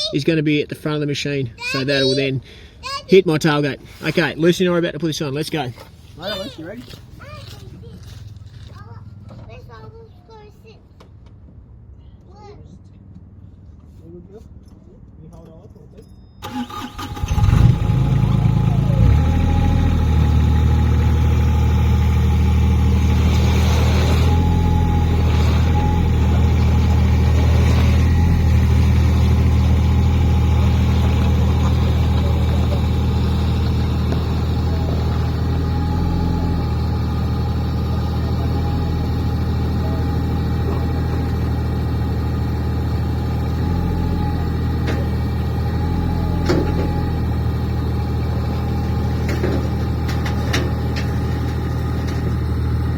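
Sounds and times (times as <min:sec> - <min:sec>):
diesel engine running: 0:16.4 - 0:52.9.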